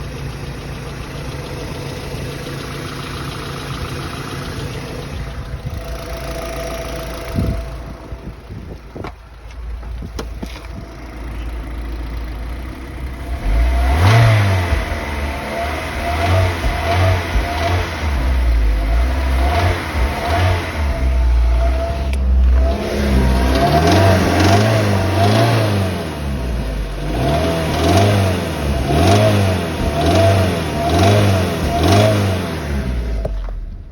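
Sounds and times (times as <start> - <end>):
engine knocking: 0.0 - 22.4
car engine idling and revving: 0.0 - 33.9.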